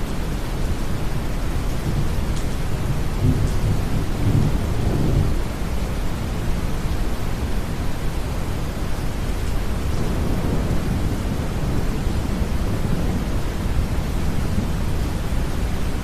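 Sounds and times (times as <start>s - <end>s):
rain: 0.0s - 16.0s
distant thunder rumbling: 9.9s - 15.6s.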